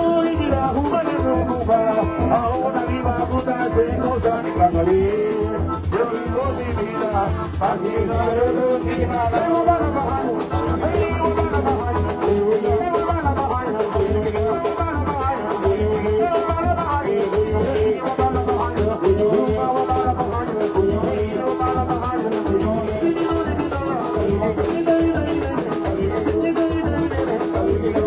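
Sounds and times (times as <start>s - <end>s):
latin dance music: 0.0s - 28.0s.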